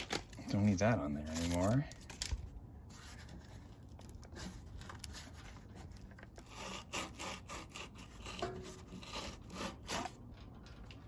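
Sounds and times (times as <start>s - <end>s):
rubbing and scraping on metal engine: 2.8s - 10.6s.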